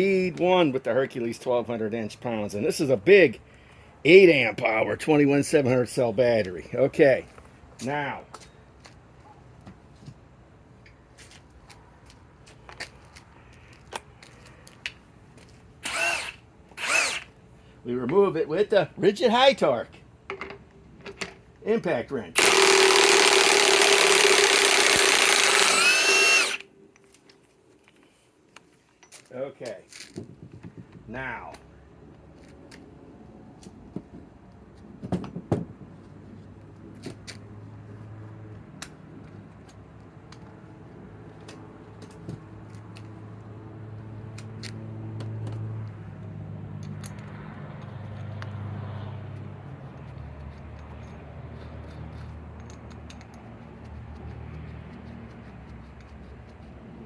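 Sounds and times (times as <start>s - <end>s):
power tool whining: 15.8s - 17.3s, 22.4s - 26.7s
tools knocking and clicking: 20.3s - 21.4s, 51.8s - 54.3s
tools clicking and knocking: 20.3s - 21.5s, 46.8s - 48.6s, 50.0s - 55.2s.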